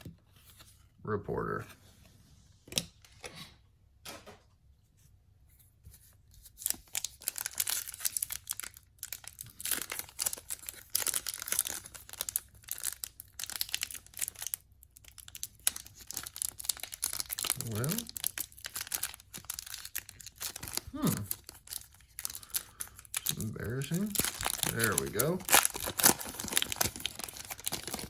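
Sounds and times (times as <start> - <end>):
plastic wrapper crinkling and tearing: 6.4 - 28.0.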